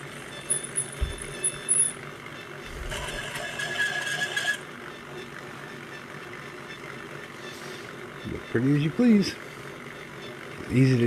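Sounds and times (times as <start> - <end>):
small electric motor whine: 0.0 - 7.7
short high squeaks and clicks: 0.3 - 2.0.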